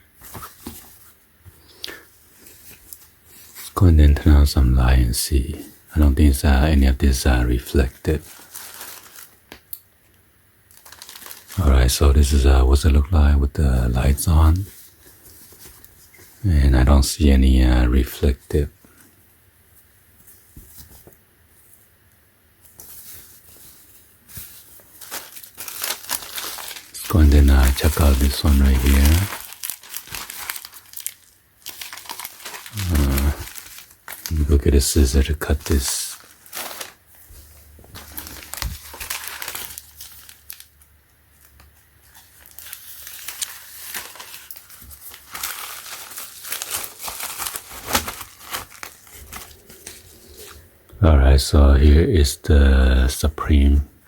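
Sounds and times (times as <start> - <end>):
packaging crinkling: 7.8 - 9.8, 10.7 - 12.2, 22.7 - 50.6
packaging tearing: 8.2 - 9.4, 10.7 - 11.7, 24.8 - 37.0, 37.9 - 40.8, 42.1 - 50.6.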